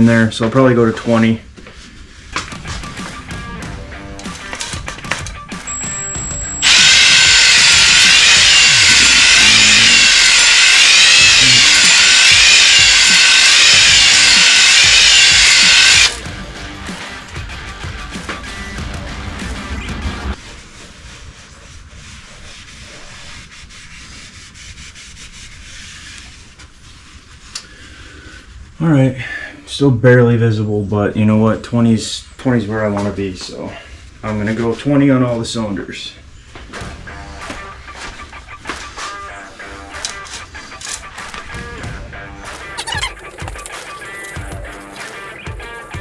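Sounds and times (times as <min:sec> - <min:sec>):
drill whining: 0:04.2 - 0:16.3, 0:42.6 - 0:46.0.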